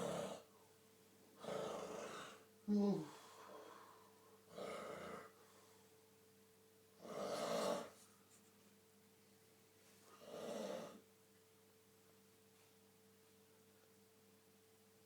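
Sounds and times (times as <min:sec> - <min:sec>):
man snoring: 0:00.0 - 0:00.4, 0:07.0 - 0:07.9
faint steady hum: 0:00.0 - 0:15.0.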